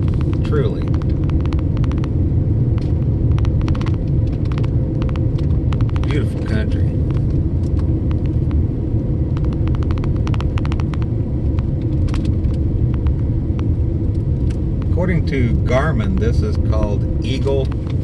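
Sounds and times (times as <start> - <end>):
vehicle rumbling on road: 0.0 - 18.0
sharp ticks: 0.1 - 2.2, 2.8 - 6.2, 7.1 - 8.6, 9.4 - 15.0.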